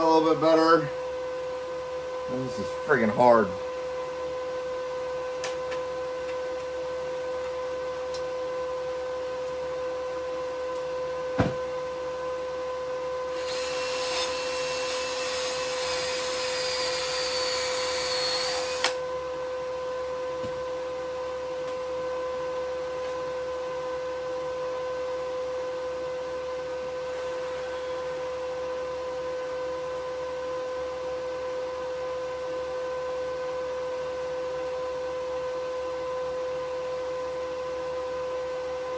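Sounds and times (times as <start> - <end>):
steady high hum: 0.0 - 7.4
knock: 11.4 - 11.6
welding arc buzzing hiss: 13.3 - 19.0.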